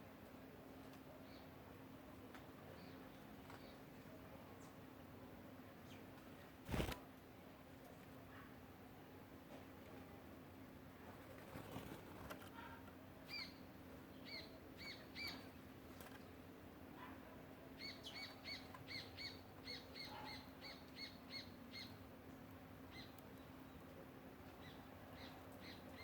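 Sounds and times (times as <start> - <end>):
songbird call notes: 14.2 - 15.5.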